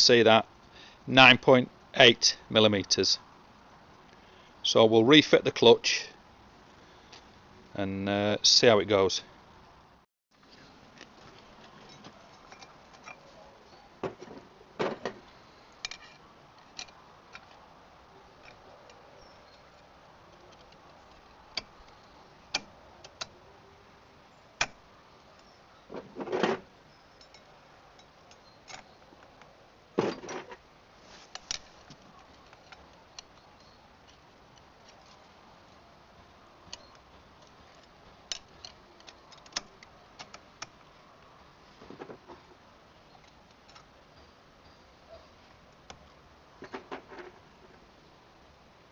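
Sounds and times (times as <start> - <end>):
metal clanks: 30.0 - 30.6.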